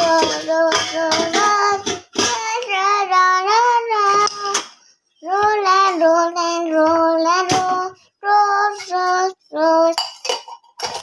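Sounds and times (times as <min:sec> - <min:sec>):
child singing long notes: 0:00.0 - 0:04.6, 0:05.2 - 0:10.0
kitchen utensils clicking: 0:10.0 - 0:11.0.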